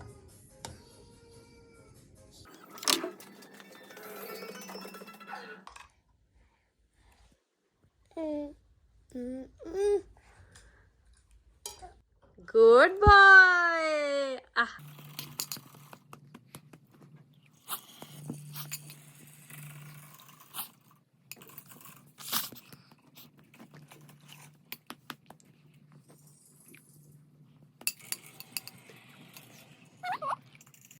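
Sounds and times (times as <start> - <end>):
spoon scraping a bowl: 2.5 - 5.7, 17.6 - 24.9, 27.8 - 30.9.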